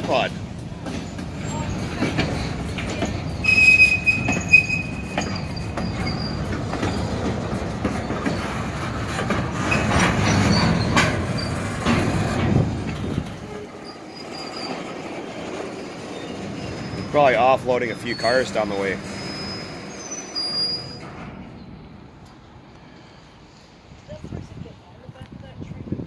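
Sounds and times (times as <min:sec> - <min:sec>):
train wheels rumbling and clattering: 0:00.0 - 0:25.9
high metallic squeal: 0:03.3 - 0:07.1, 0:09.6 - 0:11.9, 0:13.4 - 0:21.8.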